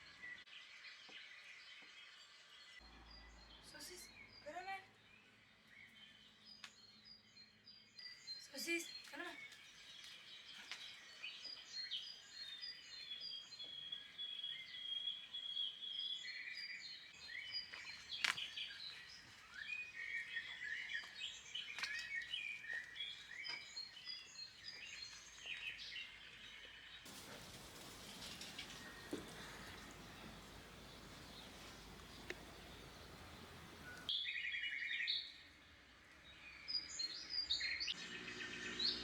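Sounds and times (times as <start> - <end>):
birds singing and chirping: 3.1 - 35.3
bird trill: 27.5 - 35.1.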